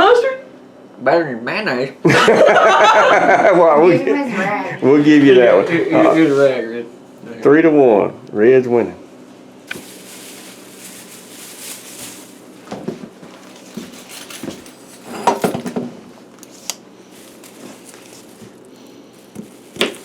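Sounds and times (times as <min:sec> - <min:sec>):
rustling: 0:09.7 - 0:15.2, 0:16.4 - 0:20.0
dishes and utensils clinking: 0:13.5 - 0:15.8.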